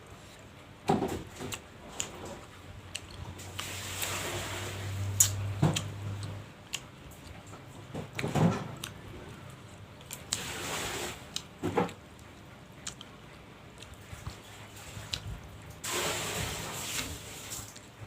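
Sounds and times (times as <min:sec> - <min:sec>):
person biting and chewing: 0:01.3 - 0:04.5, 0:05.1 - 0:07.5, 0:12.8 - 0:14.4.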